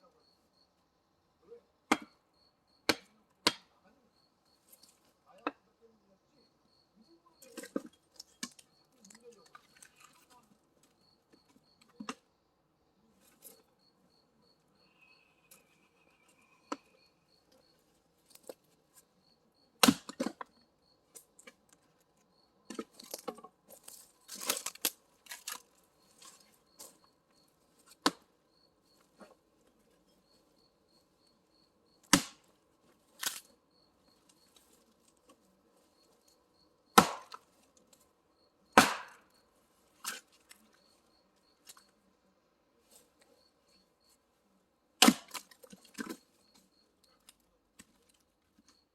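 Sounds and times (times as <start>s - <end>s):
insect chirping: 0.0s - 44.8s, 45.4s - 48.9s
axe splitting firewood: 1.9s - 2.2s, 2.9s - 3.7s, 19.8s - 20.5s, 27.8s - 28.3s, 32.0s - 32.5s, 36.9s - 37.6s, 38.8s - 39.3s, 45.0s - 46.3s.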